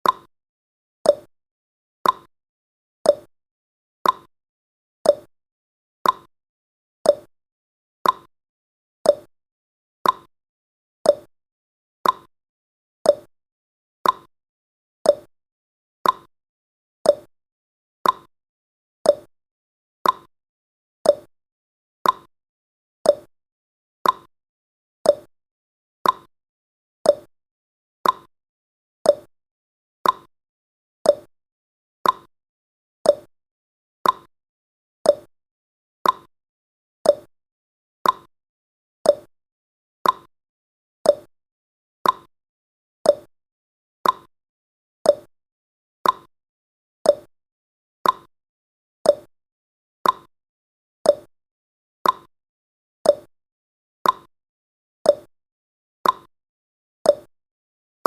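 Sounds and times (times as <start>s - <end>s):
clock ticking: 34.0s - 34.3s, 40.0s - 40.3s, 44.0s - 44.3s.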